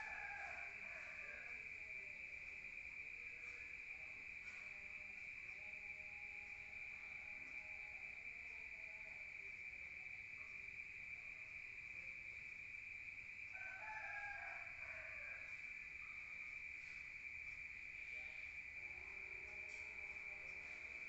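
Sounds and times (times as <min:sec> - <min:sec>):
rooster crowing: 0:00.0 - 0:02.2, 0:13.5 - 0:16.3
crickets trilling: 0:00.0 - 0:21.0.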